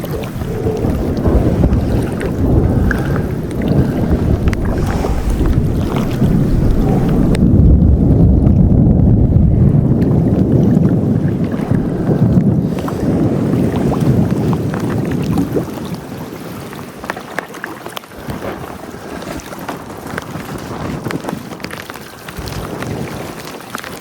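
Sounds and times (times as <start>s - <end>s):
raindrops ticking: 0.0s - 8.0s
wind gusting on microphone: 0.0s - 17.0s.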